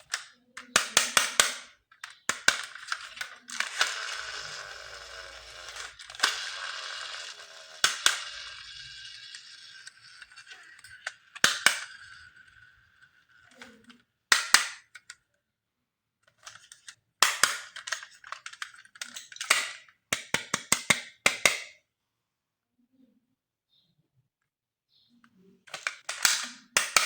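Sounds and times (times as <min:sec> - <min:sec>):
plastic toy clicks and snaps: 0:00.0 - 0:12.8, 0:13.4 - 0:15.2, 0:16.3 - 0:21.8, 0:25.7 - 0:27.0
toy electronic tone: 0:03.0 - 0:12.7.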